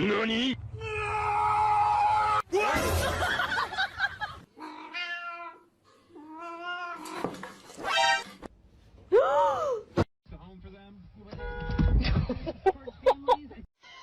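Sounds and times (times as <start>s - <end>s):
cat meowing: 4.6s - 7.1s.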